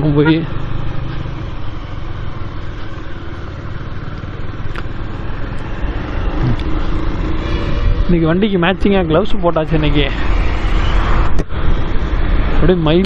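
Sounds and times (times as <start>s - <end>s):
motorcycle engine running: 0.0s - 9.9s.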